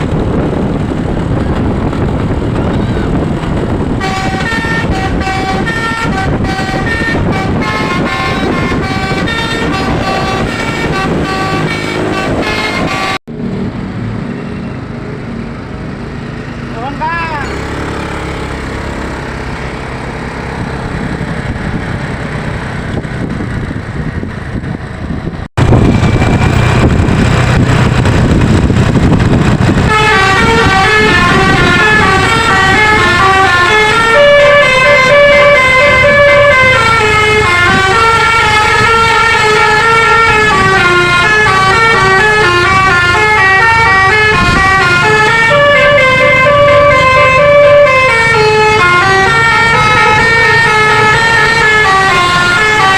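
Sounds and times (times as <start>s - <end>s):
loud rumble: 0.0s - 14.3s, 17.6s - 52.9s
bus engine running: 0.0s - 52.9s
multi-tone air horn melody: 4.0s - 13.2s, 29.8s - 52.9s.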